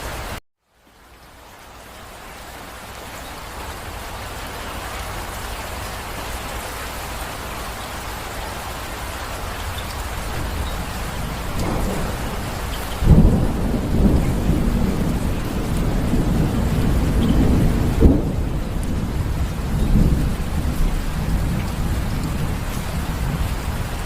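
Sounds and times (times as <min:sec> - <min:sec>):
heavy rain: 0:00.0 - 0:24.0
thunder clap and rumble: 0:09.6 - 0:24.0.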